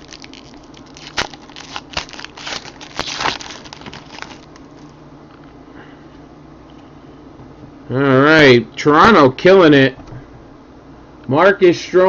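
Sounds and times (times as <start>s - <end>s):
card wrappers crinkling: 0.0s - 5.0s.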